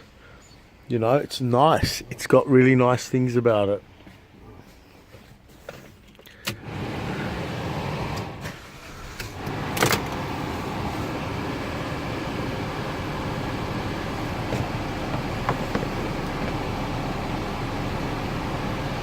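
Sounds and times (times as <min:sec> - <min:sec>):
road noise: 0:05.5 - 0:19.0
car engine running: 0:06.6 - 0:19.0.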